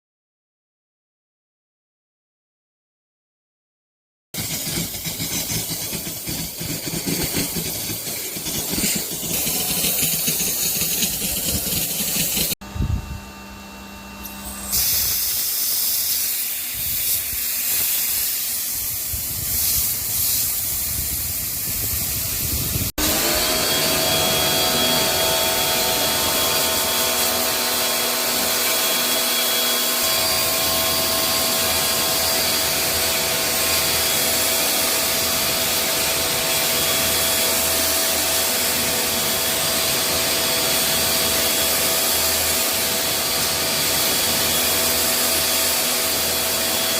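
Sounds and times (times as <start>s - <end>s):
pressure washer spray hissing: 4.4s - 12.6s, 14.7s - 22.9s, 30.0s - 46.8s
steady whine: 22.4s - 46.9s.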